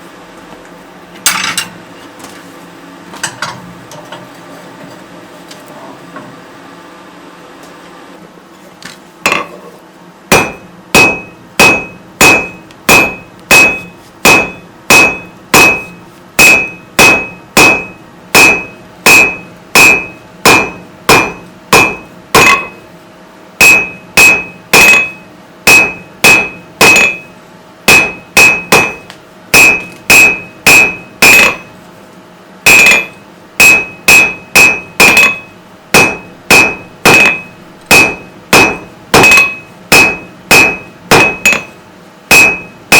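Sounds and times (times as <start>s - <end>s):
hammer striking steel on anvil: 10.3s - 22.8s, 23.6s - 31.7s, 32.6s - 42.9s.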